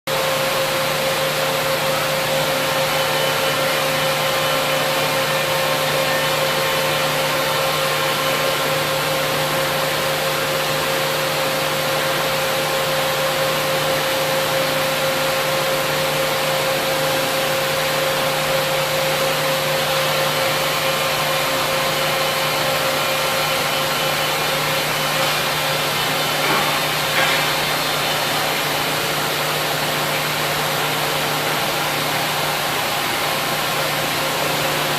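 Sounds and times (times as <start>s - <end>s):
machine hum and hiss with whine: 0.1s - 34.9s.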